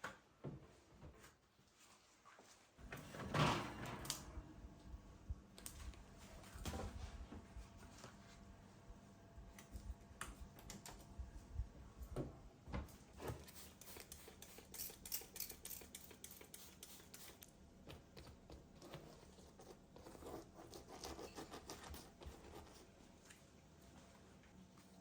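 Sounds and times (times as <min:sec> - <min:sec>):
clicks and scrapes of objects handled: 0:13.4 - 0:19.2.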